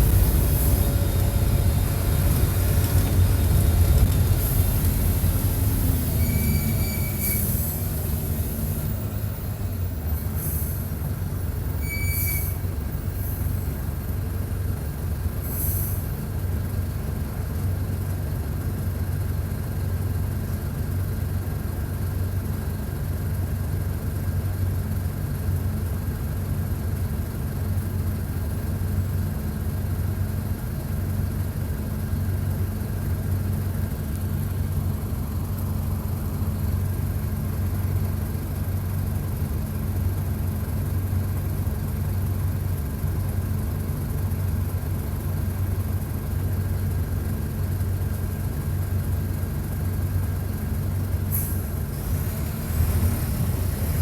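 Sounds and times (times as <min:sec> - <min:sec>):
bus diesel engine drone: 0:00.0 - 0:54.0
high squeaks and hisses: 0:05.8 - 0:08.2, 0:11.6 - 0:13.7, 0:15.4 - 0:16.2.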